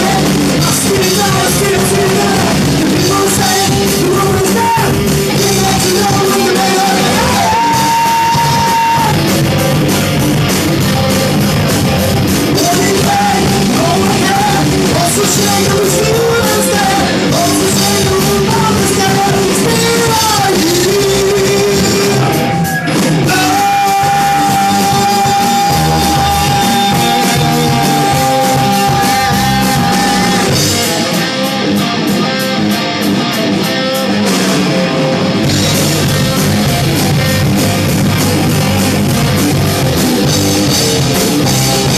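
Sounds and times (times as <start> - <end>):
person singing: 0.0 - 9.3, 12.5 - 31.8
hard rock music: 0.0 - 41.9.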